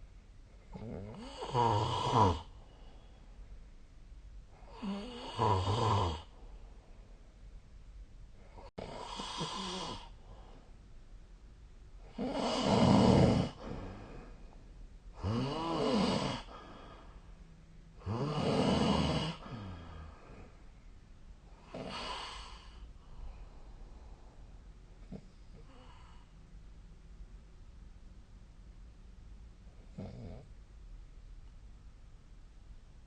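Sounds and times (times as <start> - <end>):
person snoring: 0.7 - 2.6, 4.6 - 6.3, 8.6 - 10.2, 12.1 - 14.4, 15.2 - 17.2, 18.0 - 20.5, 21.6 - 22.9.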